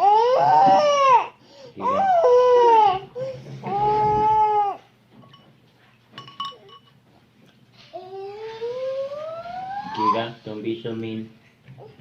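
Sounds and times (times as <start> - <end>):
young child crying: 0.0 - 4.8.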